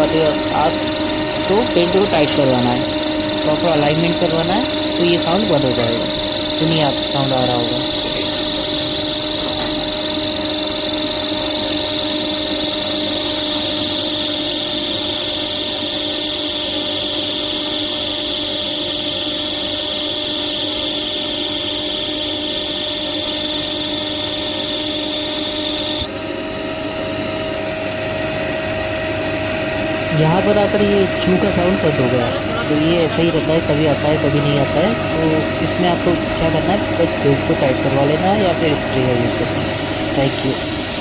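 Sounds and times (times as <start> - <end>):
drive belt squealing: 0.0 - 27.5
air compressor running: 0.0 - 41.0.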